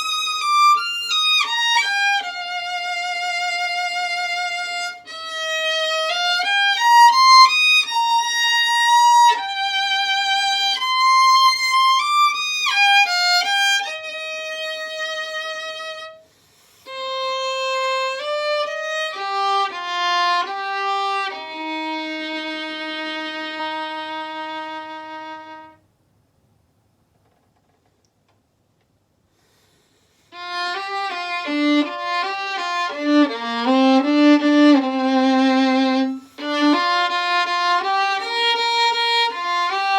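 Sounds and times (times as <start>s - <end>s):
violin playing slow melody: 0.0s - 25.8s, 30.2s - 39.9s.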